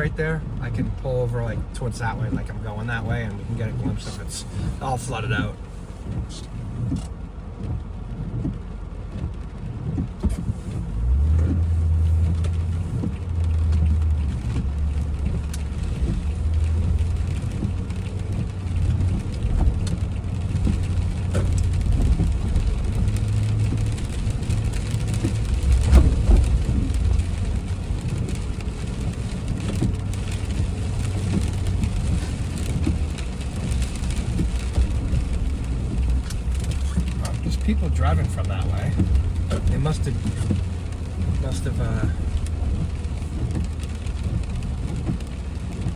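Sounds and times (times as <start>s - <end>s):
engine and road rumble: 0.0s - 45.9s
rain pattering on car: 0.0s - 45.9s.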